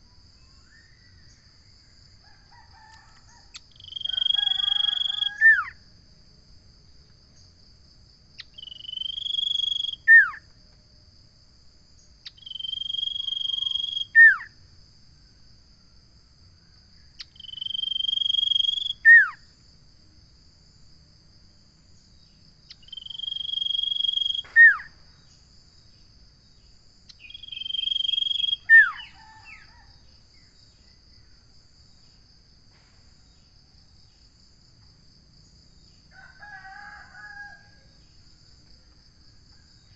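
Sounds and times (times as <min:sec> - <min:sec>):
high insect drone: 0:00.0 - 0:39.9
bird singing whistles: 0:03.8 - 0:05.8, 0:08.5 - 0:10.4, 0:12.3 - 0:14.5, 0:22.8 - 0:24.9, 0:27.1 - 0:29.6.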